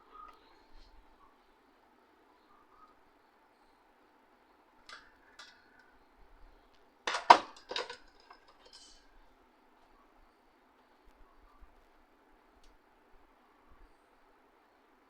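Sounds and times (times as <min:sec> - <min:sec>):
hard parts clattering and clicking: 0:07.1 - 0:09.0.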